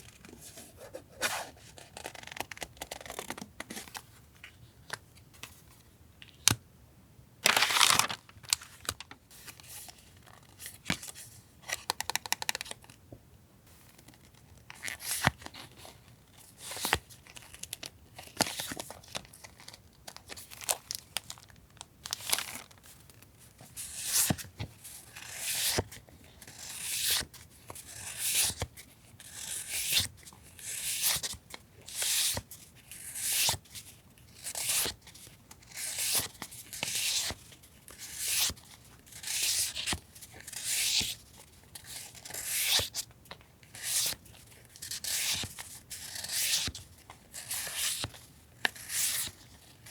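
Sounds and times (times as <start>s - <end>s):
paper rustling: 7.4s - 10.7s
paper tearing: 7.5s - 8.3s.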